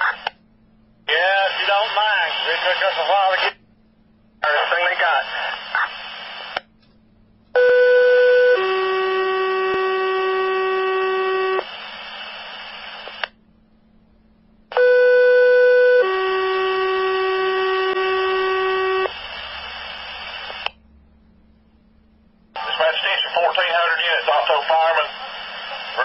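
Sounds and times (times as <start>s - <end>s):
two-tone radio page: 0.0s - 0.4s, 1.1s - 3.6s, 4.4s - 6.6s, 10.9s - 13.3s, 14.8s - 20.8s, 22.5s - 26.0s
radio hiss: 1.1s - 3.6s, 4.4s - 6.6s, 11.5s - 13.3s, 19.0s - 20.7s, 22.6s - 26.0s.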